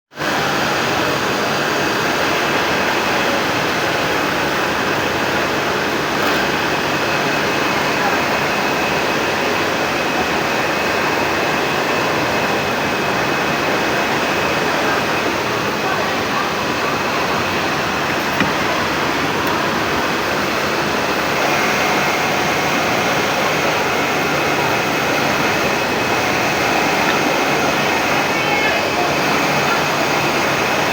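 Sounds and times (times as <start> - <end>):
faint steady whine: 0.2 - 30.9
knitting machines whirring: 0.2 - 30.9.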